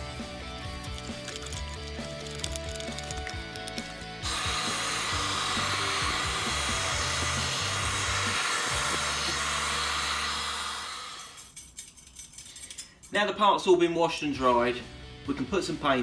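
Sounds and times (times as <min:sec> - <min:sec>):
background music: 0:00.0 - 0:11.0, 0:13.3 - 0:16.0
loud steady hiss: 0:04.2 - 0:11.3.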